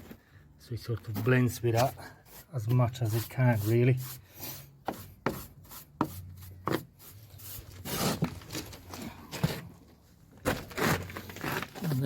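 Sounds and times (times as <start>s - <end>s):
brush scrubbing mortar: 1.0s - 8.4s.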